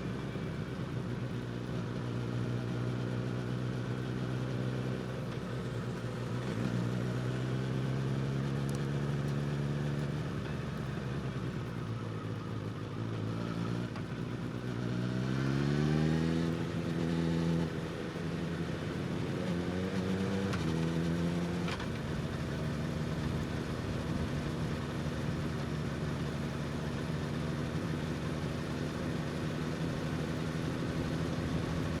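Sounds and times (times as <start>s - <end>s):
motorcycle engine revving: 13.0s - 32.0s.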